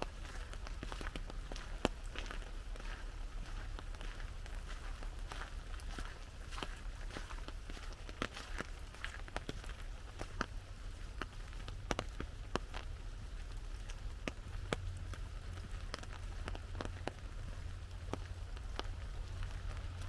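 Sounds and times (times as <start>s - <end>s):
raindrops tapping on umbrella: 0.0s - 4.6s, 7.4s - 20.0s
light rain hiss: 0.0s - 20.0s
low rumble: 8.8s - 20.0s.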